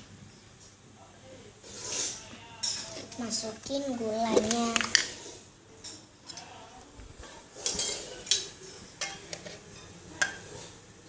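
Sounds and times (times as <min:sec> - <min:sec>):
metal spoon clinking on a wok: 0:07.6 - 0:10.4.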